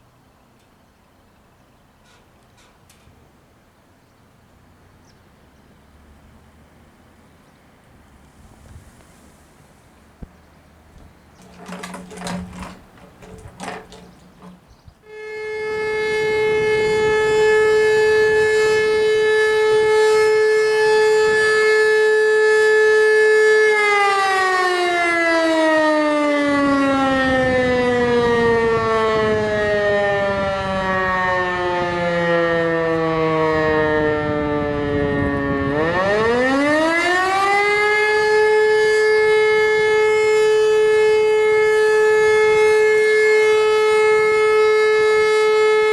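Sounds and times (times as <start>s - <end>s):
motor siren wailing: 15.1s - 45.9s.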